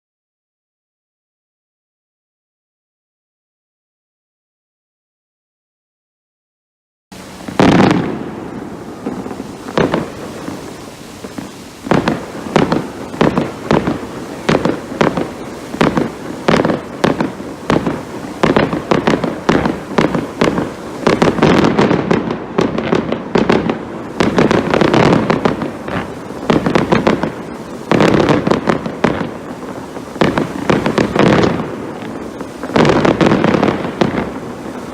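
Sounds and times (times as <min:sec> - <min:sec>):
fireworks bangs: 0:07.1 - 0:34.9.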